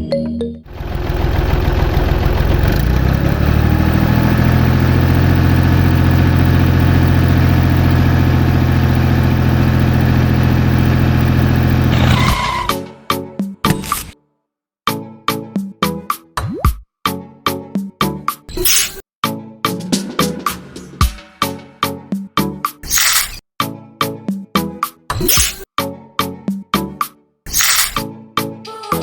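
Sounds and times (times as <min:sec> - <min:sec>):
tractor engine running: 0:00.7 - 0:13.1.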